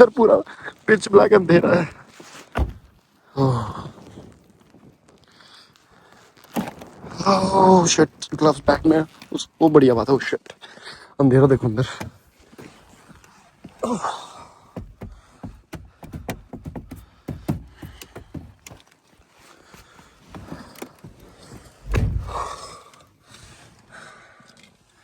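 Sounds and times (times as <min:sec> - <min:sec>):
low thump and rush: 0:21.8 - 0:22.6.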